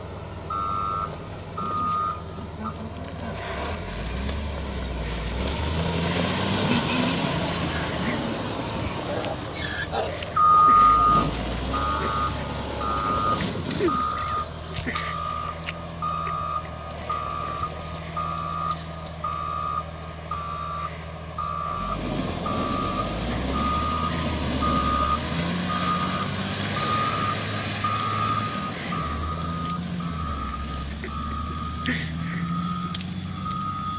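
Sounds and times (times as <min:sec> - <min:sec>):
diesel engine running: 0:00.0 - 0:33.9
reversing alarm beeping: 0:00.5 - 0:02.8, 0:10.4 - 0:33.9.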